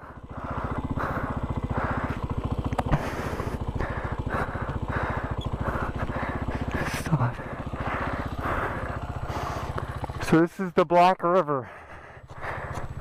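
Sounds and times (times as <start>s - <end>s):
dirt bike engine putter: 2.1s - 3.9s.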